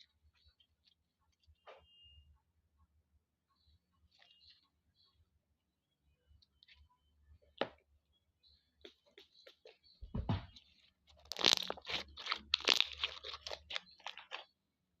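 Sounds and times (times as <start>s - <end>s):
low thump: 10.0s - 10.5s
slime crackling and popping: 11.1s - 14.5s
slime squeezed by hand: 11.2s - 14.4s.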